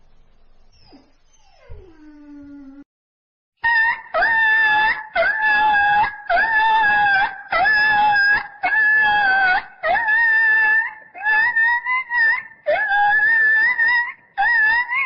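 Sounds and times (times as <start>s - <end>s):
slowed puppy whining: 0.6s - 2.9s.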